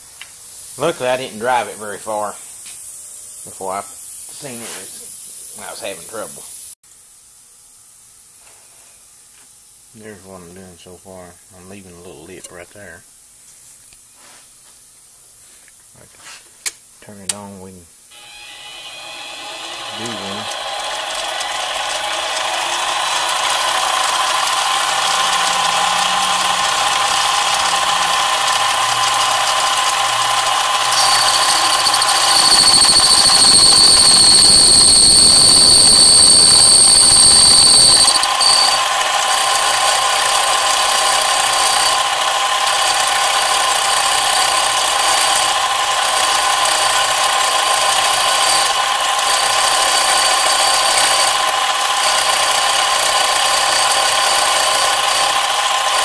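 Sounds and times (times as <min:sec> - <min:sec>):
power tool motor whine: 0:18.1 - 0:56.0
grinding metal with squeal: 0:18.2 - 0:56.0.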